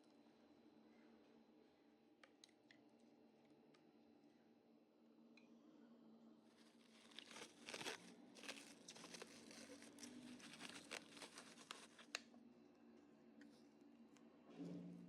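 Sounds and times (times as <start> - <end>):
material crinkling and crackling: 6.5 - 12.2.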